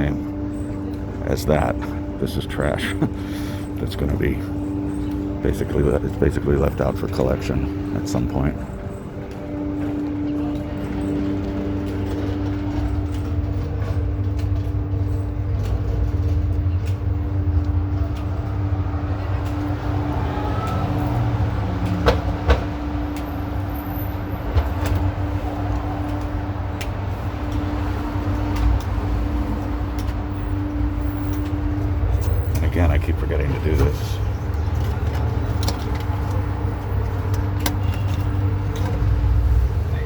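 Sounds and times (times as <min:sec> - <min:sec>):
heavy vehicle engine rumbling: 0:00.0 - 0:40.0.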